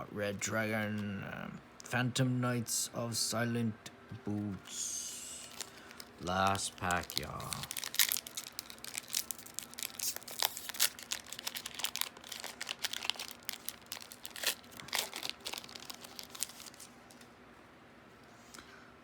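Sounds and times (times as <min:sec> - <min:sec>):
wrapper crinkling and tearing: 0:04.7 - 0:17.2.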